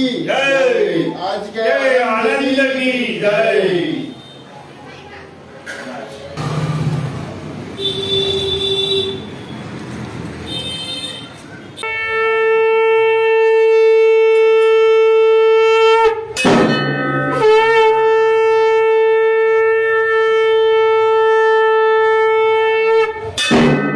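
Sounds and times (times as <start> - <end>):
conch shell blasts: 7.8 - 9.3, 11.8 - 23.9.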